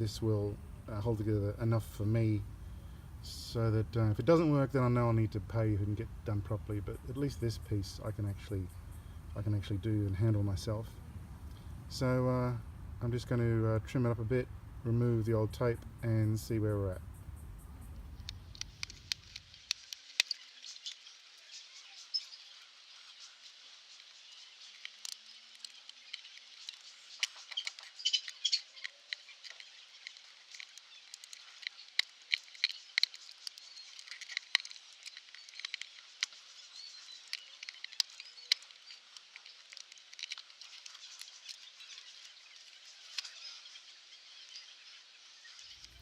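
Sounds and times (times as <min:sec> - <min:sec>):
faint steady hiss: 0:00.0 - 0:46.0.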